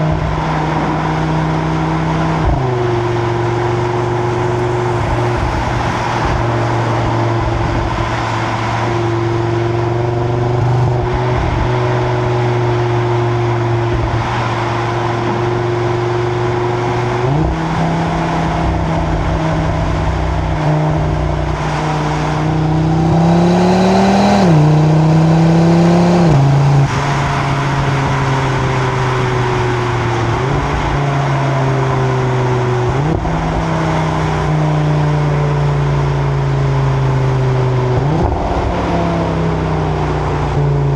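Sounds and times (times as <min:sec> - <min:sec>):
car exhaust: 0:00.0 - 0:40.9
road and wind noise: 0:00.0 - 0:40.9.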